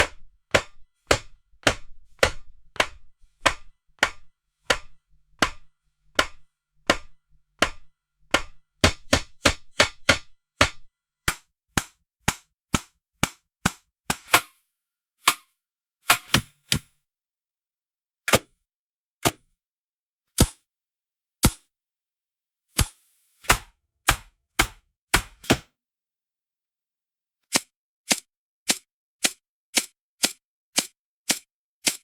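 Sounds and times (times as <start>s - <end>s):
knife chopping on cutting board: 0.0s - 14.5s, 22.8s - 25.7s, 27.5s - 32.0s.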